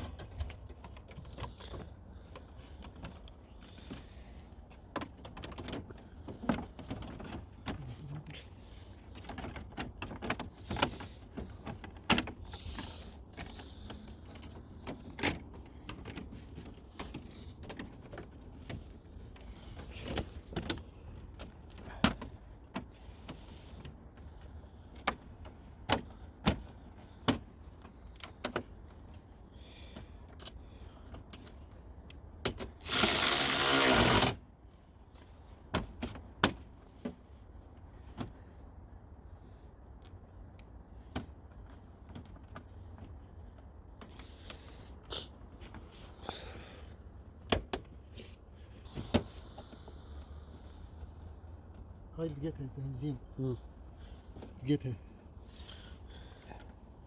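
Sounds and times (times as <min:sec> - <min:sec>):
loud rasping burst: 0:32.8 - 0:34.4.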